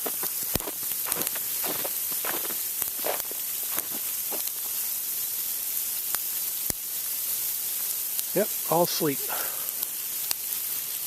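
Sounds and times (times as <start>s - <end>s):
ticks of ice pellets: 0.0s - 4.8s
sleet hissing on snow: 0.0s - 11.0s.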